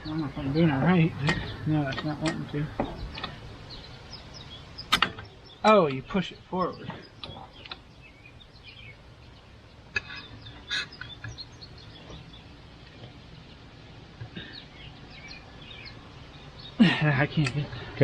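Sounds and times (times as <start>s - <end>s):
faint birdsong: 0.0s - 18.0s
short metallic clicks: 4.8s - 6.0s.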